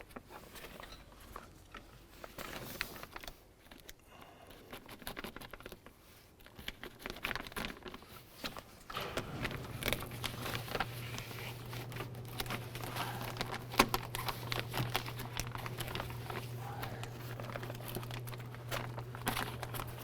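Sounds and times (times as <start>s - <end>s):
plastic sheet crinkling: 4.6s - 20.0s.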